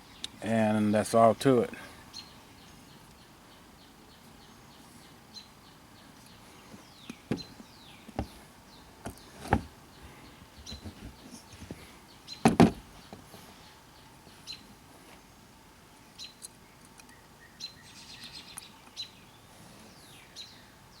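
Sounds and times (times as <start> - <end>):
birds chirping: 0.0 - 21.0
hard objects knocking and clicking: 12.4 - 12.8.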